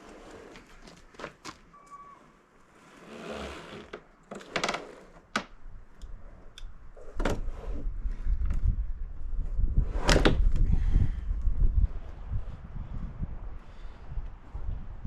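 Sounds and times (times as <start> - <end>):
boards scraping: 2.7 - 5.3.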